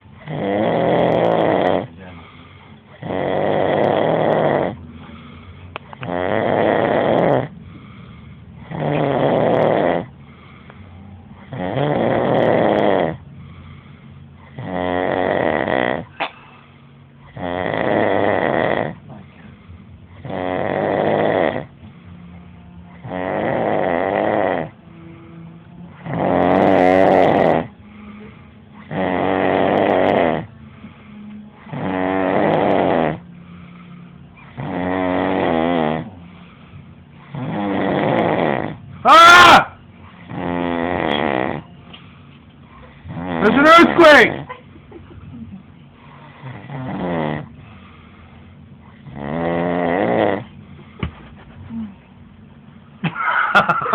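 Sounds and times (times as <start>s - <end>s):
person snoring loudly: 0.2s - 4.9s, 5.9s - 10.5s, 11.4s - 13.2s, 14.4s - 16.1s, 17.3s - 19.3s, 20.2s - 21.7s, 22.9s - 24.8s, 25.9s - 27.8s, 28.8s - 30.5s, 31.6s - 33.6s, 34.4s - 36.4s, 37.2s - 41.7s, 43.0s - 44.5s, 46.3s - 47.6s, 49.0s - 50.6s
quiet breathing: 1.8s - 3.6s, 4.7s - 6.1s, 7.5s - 9.3s, 10.0s - 11.6s, 13.1s - 14.8s, 18.9s - 23.9s, 24.6s - 26.1s, 26.8s - 29.6s, 30.4s - 32.3s, 32.9s - 35.0s, 36.0s - 37.7s, 41.6s - 43.4s, 45.4s - 49.2s, 50.4s - 52.5s.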